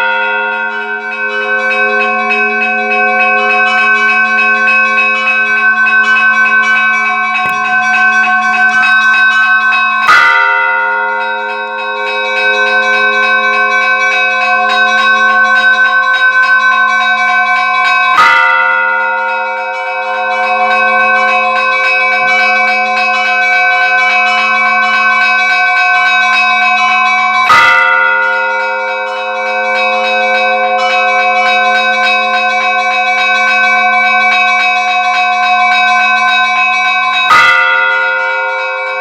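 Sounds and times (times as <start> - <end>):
sustained bell ringing: 0.0 - 39.0
heavy bell strike: 7.4 - 11.5.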